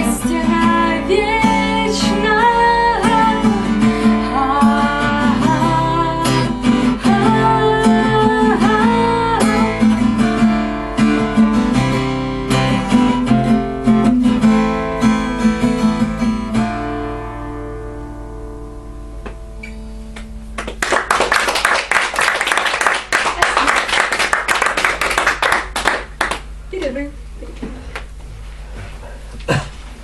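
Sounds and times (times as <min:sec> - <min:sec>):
acoustic guitar strumming: 0:00.0 - 0:20.8.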